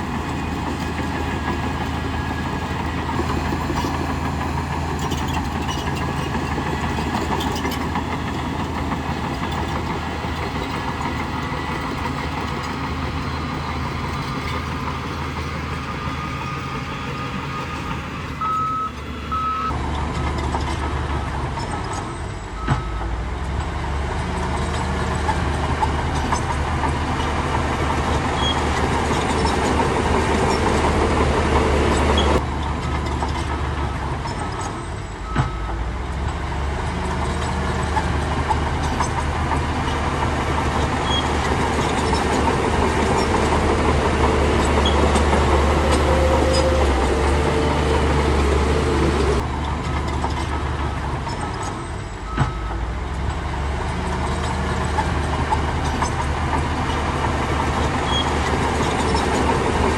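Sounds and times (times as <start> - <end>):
bulldozer diesel engine: 0.0 - 59.9
reverse alarm beeping: 15.6 - 19.7.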